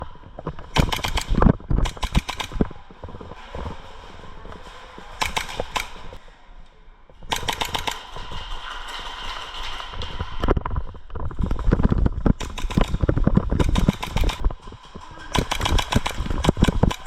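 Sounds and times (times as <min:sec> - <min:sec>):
airsoft guns firing full auto: 0:00.8 - 0:02.6, 0:05.2 - 0:06.1, 0:07.3 - 0:08.5, 0:12.4 - 0:14.4, 0:15.3 - 0:17.0.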